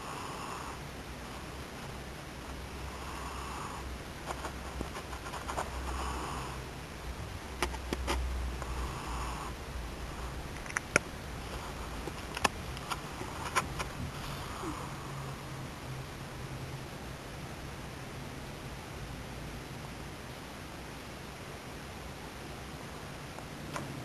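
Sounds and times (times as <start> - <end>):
cat snoring: 0.0 - 0.9, 2.5 - 4.0, 5.7 - 6.7, 8.6 - 10.4, 12.9 - 15.7.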